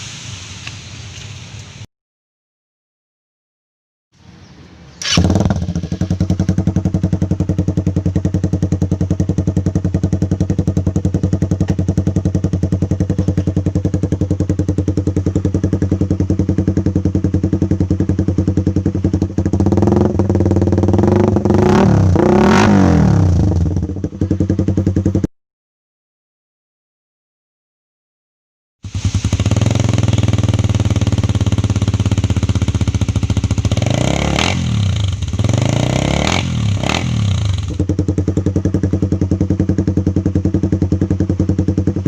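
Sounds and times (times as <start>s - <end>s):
motorcycle engine idling and revving: 4.9s - 25.3s, 28.8s - 42.0s.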